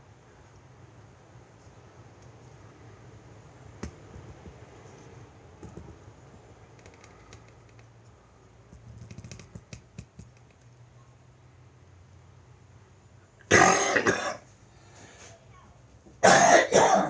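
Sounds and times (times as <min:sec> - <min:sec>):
low steady hum: 0:00.0 - 0:17.0
clicks of hard objects handled: 0:03.8 - 0:04.6.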